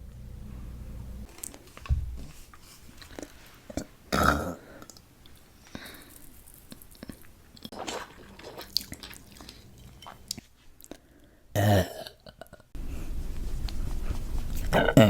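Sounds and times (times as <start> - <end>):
woman burping: 4.1 - 4.6, 11.6 - 12.7, 14.7 - 15.0.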